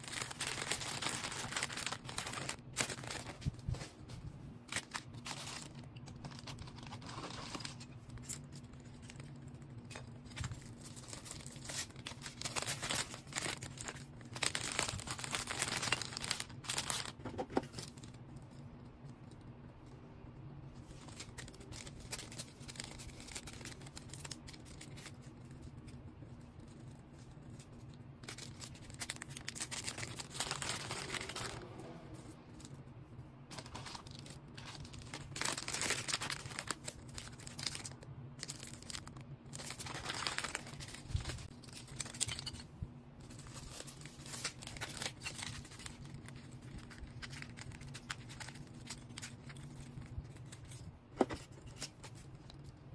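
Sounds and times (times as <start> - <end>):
packaging crinkling and tearing: 0.0 - 18.6, 20.8 - 32.8, 33.5 - 42.5, 43.2 - 52.8.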